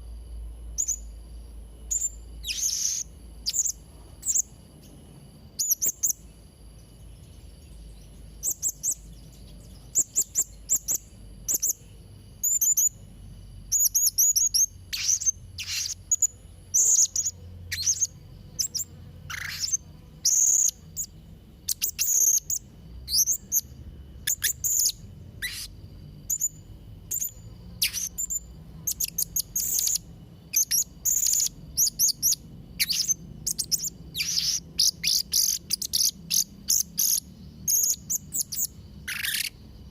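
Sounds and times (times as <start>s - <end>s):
parrot shrill chirps and trills: 1.9s - 4.5s, 13.7s - 21.1s, 21.7s - 25.7s, 27.1s - 39.6s.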